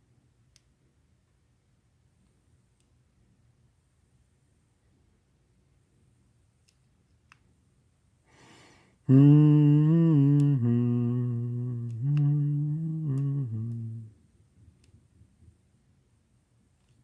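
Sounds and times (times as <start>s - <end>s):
man humming a tune: 9.1s - 14.2s
faint clicks: 10.3s - 14.1s.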